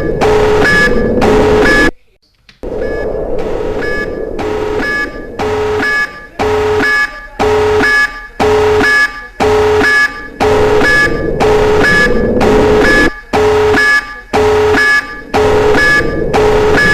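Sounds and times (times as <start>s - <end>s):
alert alarm blasts: 0.0s - 1.9s, 2.6s - 16.9s.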